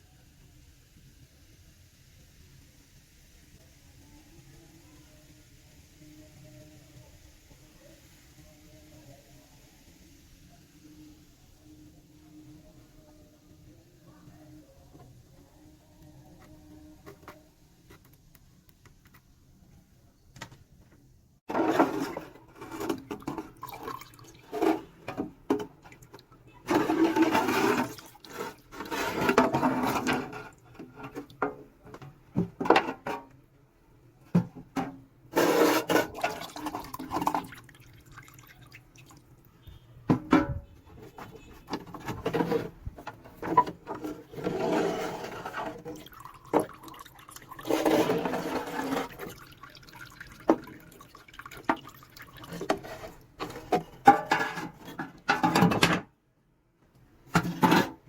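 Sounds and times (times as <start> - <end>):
water splashing and sloshing: 41.1 - 55.0.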